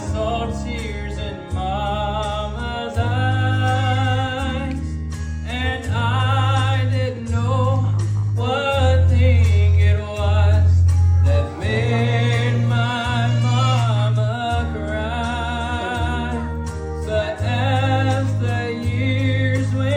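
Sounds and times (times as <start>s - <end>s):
instrumental accompaniment: 0.0s - 19.9s
person singing with vibrato: 5.5s - 19.9s.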